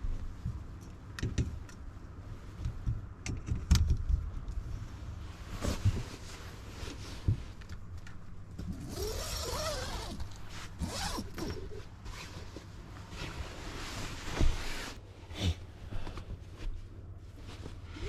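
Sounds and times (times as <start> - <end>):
zipper being pulled: 8.7 - 12.3.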